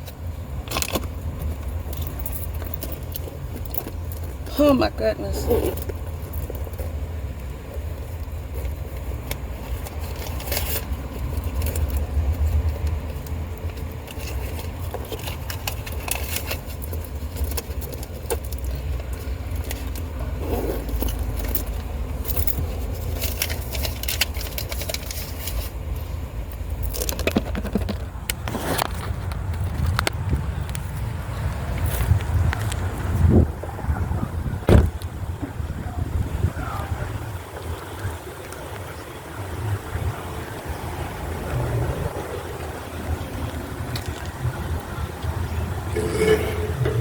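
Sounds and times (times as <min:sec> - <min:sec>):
vacuum cleaner rumbling: 0:45.9 - 0:47.0
vacuum nozzle scraping and clicking: 0:45.9 - 0:47.0.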